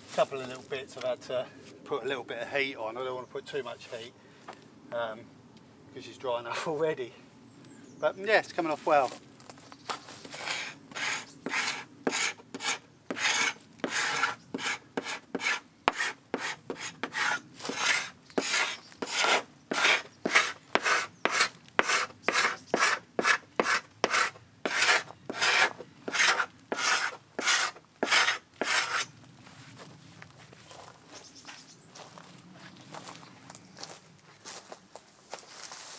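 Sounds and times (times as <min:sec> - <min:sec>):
paint scraper rasping on wood: 0:10.4 - 0:29.1.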